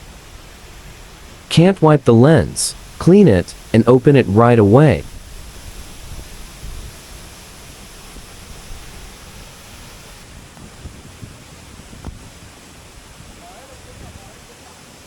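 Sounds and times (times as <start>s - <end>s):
waterfall roaring: 0.0s - 10.3s
wind gusting on microphone: 5.0s - 14.5s.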